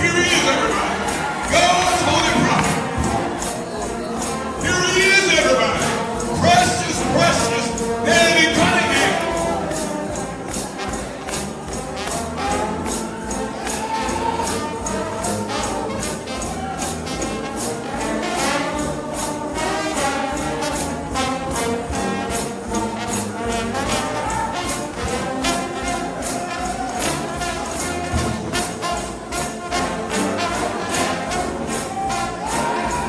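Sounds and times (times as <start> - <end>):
brass band playing fast: 0.0 - 33.0
tambourine: 0.0 - 33.0
drums: 9.4 - 33.0.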